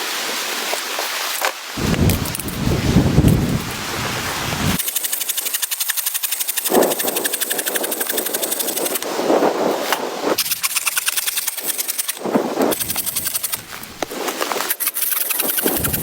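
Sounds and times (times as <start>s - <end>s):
snow pattering on tent fabric: 0.0s - 5.0s, 11.4s - 16.0s
wind gusts: 1.7s - 4.8s, 6.7s - 16.0s.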